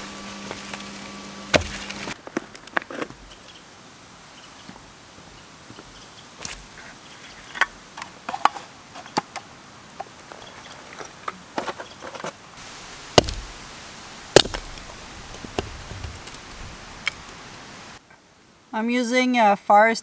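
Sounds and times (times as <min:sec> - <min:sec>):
axe chopping firewood: 0:00.0 - 0:02.2, 0:12.6 - 0:17.7
wood knocking and clacking: 0:12.6 - 0:17.6.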